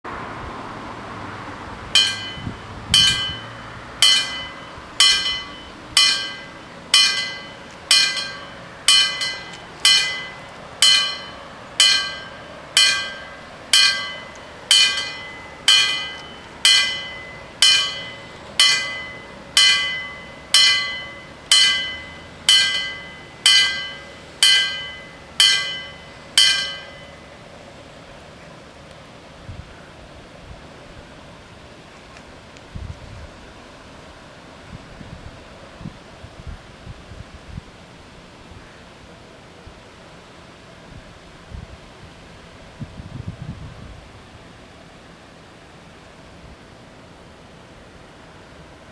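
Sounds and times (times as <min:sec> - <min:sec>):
level crossing warning bells: 0:01.9 - 0:27.8.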